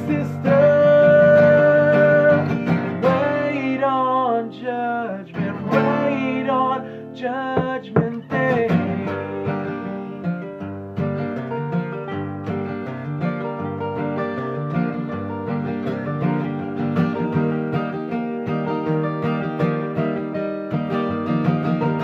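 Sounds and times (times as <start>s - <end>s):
picked bass line: 0.0s - 3.9s, 7.6s - 10.1s
strummed acoustic guitar: 0.0s - 22.0s.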